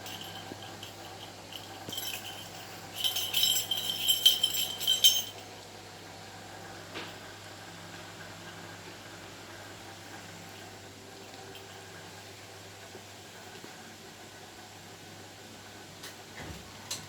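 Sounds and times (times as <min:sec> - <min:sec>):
small metal objects jingling: 0:00.0 - 0:05.5
faint steady hum: 0:00.0 - 0:17.0.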